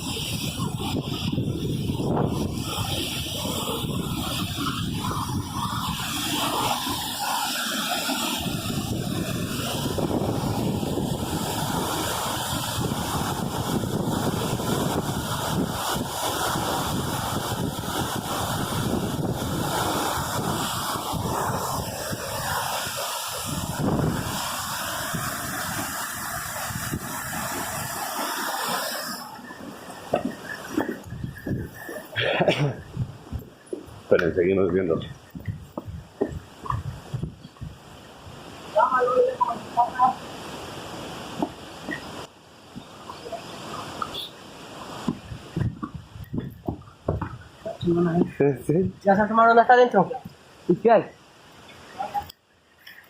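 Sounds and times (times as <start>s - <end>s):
wind buffeting microphone: 0.0s - 44.2s, 44.8s - 49.1s
waterfall rushing: 0.0s - 53.0s
sharp knocks: 45.0s - 47.4s.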